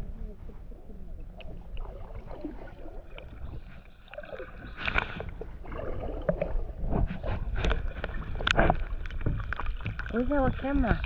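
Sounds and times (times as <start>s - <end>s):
steady low rumble: 0.0s - 4.0s
paddle splashing in water: 1.7s - 11.0s.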